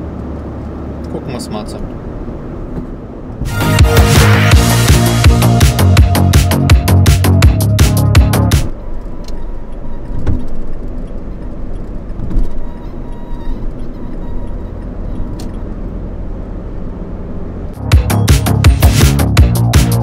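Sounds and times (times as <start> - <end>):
car cabin road rumble: 0.0 - 3.6, 7.3 - 19.5.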